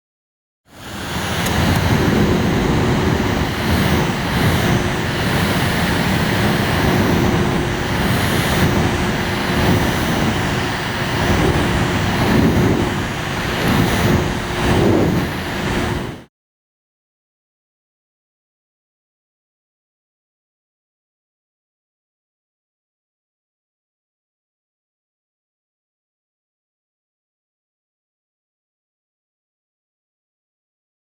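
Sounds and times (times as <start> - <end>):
electric fan running: 0.7 - 16.3.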